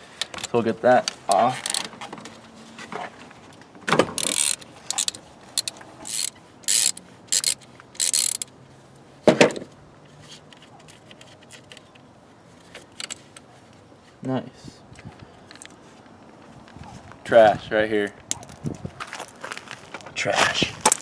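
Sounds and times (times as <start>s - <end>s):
ratchet wrench clicking: 1.3s - 1.9s, 4.2s - 8.5s.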